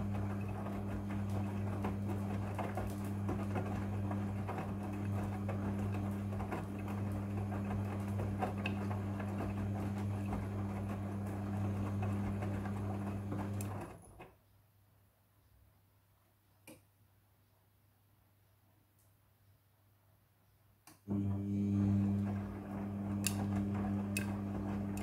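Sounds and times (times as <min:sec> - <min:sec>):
laundry sloshing and knocking: 0:00.0 - 0:14.0
washing machine motor hum: 0:00.0 - 0:14.3, 0:21.0 - 0:25.0.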